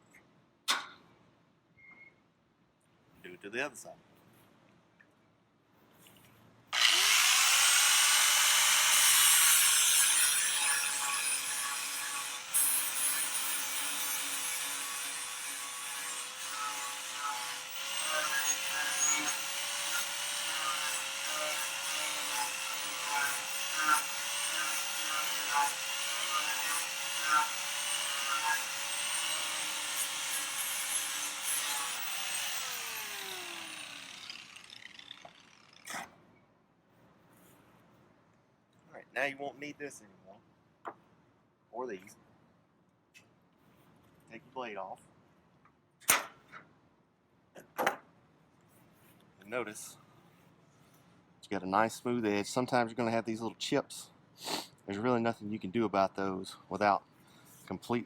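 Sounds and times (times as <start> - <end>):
angle grinder grinding metal: 6.8 - 36.1.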